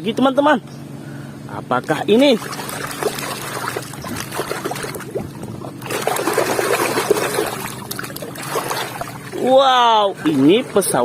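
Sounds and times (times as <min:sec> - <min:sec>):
water splashing and trickling: 0:01.7 - 0:11.0.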